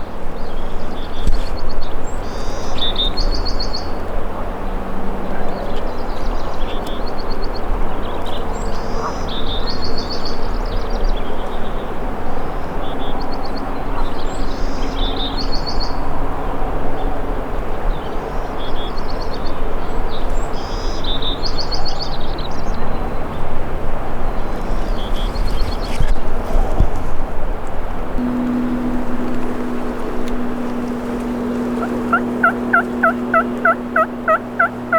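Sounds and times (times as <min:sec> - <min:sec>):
small birds singing: 0:00.0 - 0:16.2, 0:17.8 - 0:27.0
steady low rumble: 0:22.5 - 0:34.9.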